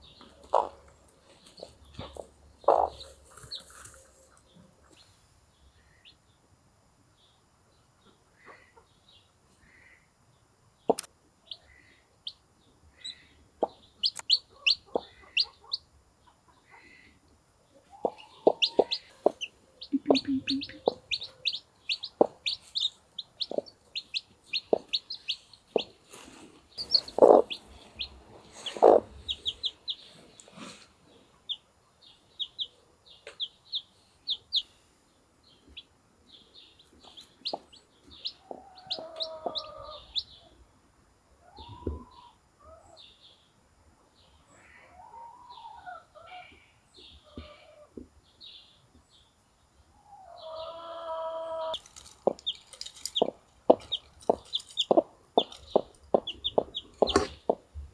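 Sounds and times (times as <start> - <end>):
chicks peeping: 0.0 - 5.1, 13.0 - 16.9, 17.7 - 34.8, 35.5 - 40.5, 50.0 - 57.9
hen clucking: 0.4 - 0.8, 1.6 - 4.2, 13.6 - 16.9, 17.8 - 30.7, 37.0 - 40.4, 50.1 - 57.9.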